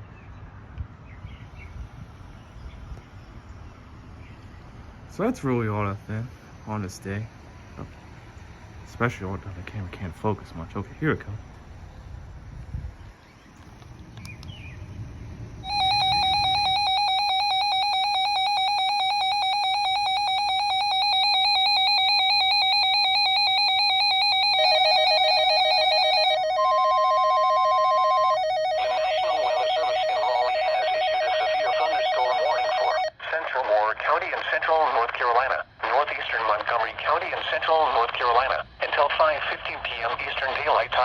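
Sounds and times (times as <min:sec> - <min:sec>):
short higher tone: 0:15.6 - 0:17.9
loud electronic alert tone: 0:15.6 - 0:33.1
broadcast voice speaking: 0:33.2 - 0:41.0.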